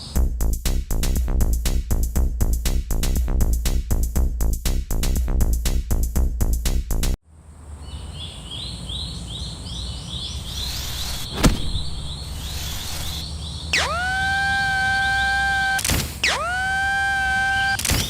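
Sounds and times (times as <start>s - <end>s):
high chirps: 8.2s - 17.8s
low steady rumble: 10.4s - 13.3s
sharp click: 10.8s - 13.2s, 15.8s - 16.4s, 17.7s - 18.0s.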